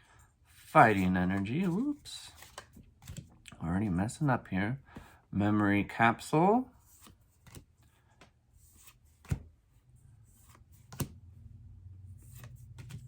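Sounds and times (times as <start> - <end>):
trading cards being handled: 0.5 - 3.4, 6.8 - 9.5, 12.2 - 13.0
low steady hum: 9.7 - 13.0.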